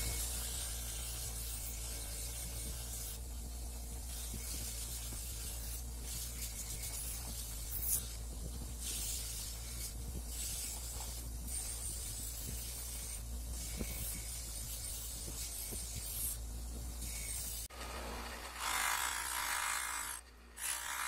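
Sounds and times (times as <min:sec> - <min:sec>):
hissing scrubbing on metal: 0:00.0 - 0:17.7
power tool motor humming: 0:17.1 - 0:21.0.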